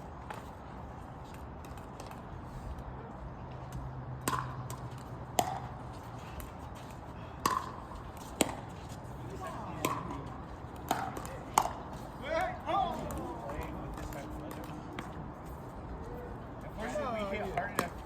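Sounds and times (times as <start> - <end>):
paddles hitting plastic ball: 7.4 - 8.8, 9.7 - 12.0.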